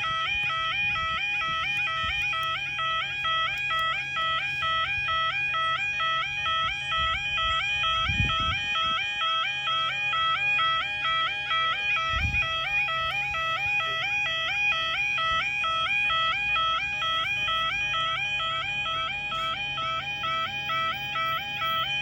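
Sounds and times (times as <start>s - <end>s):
electronic two-tone warning alarm: 0.0s - 22.0s.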